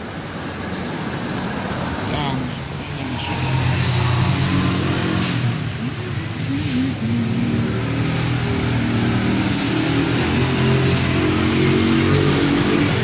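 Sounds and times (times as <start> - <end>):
vehicle engine humming: 0.0 - 13.0.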